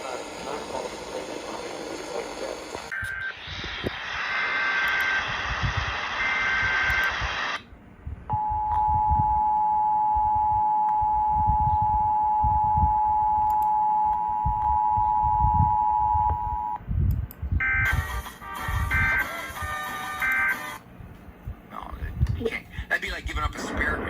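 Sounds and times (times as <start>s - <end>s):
low rumbling noise: 20.9s - 24.0s.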